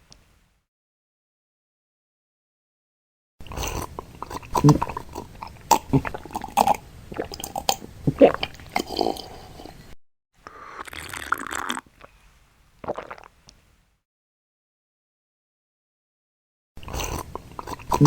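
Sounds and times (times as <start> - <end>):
person gulping a drink: 3.6 - 12.2, 12.8 - 13.6
breathy exhale: 9.2 - 12.4.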